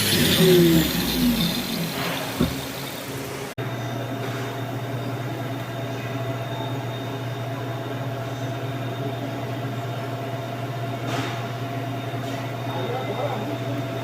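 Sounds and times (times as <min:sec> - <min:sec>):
welding arc humming and hissing: 0:00.0 - 0:03.5.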